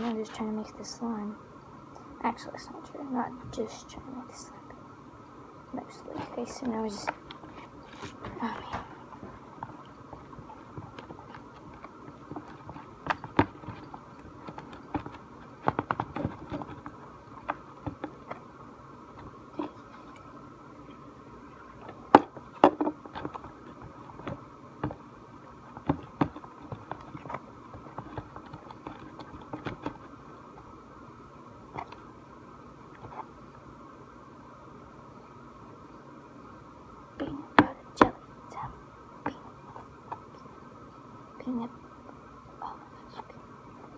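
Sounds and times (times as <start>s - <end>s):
steady background hum: 0.0s - 43.9s
stick stirring slime: 6.0s - 18.4s, 21.6s - 25.0s, 25.7s - 30.2s.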